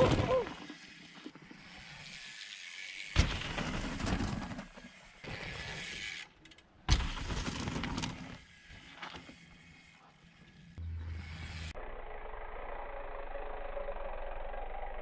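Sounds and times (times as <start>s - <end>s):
bike landing thud: 3.2s - 4.7s, 6.9s - 8.3s
tyres rattling over rough ground: 6.4s - 10.7s.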